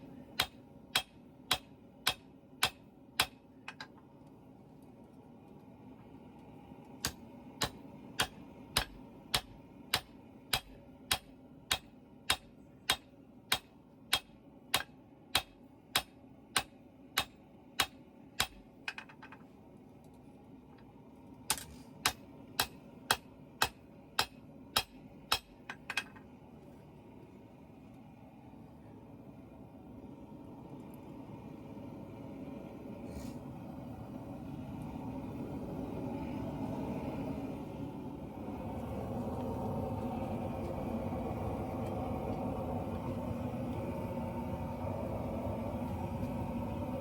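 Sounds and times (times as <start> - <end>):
steady hum: 0.0 - 47.0
hammer striking hot steel: 0.3 - 4.0, 7.0 - 19.2, 21.5 - 26.1.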